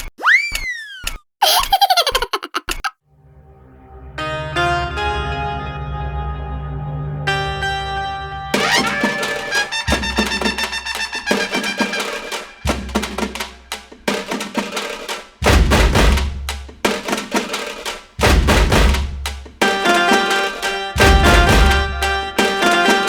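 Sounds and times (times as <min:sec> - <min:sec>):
music with drum beat and heavy bass: 0:09.0 - 0:20.4, 0:21.0 - 0:23.0.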